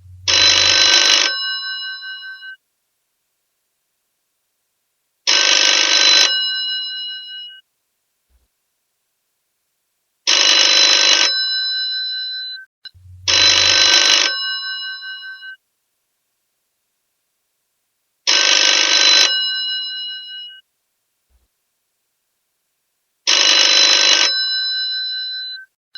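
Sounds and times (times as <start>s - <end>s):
telephone bell ringing: 18.4s - 20.0s, 23.3s - 25.3s.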